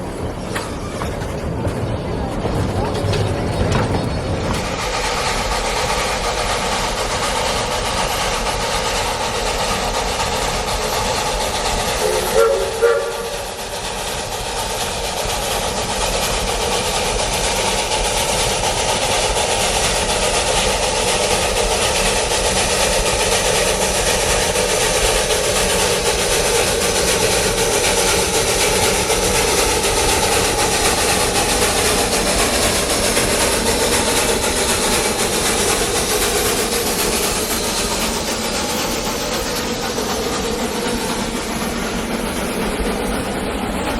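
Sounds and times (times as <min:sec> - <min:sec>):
steam train rumble and hiss: 0:00.0 - 0:43.9
steam whistle toots: 0:12.0 - 0:13.6.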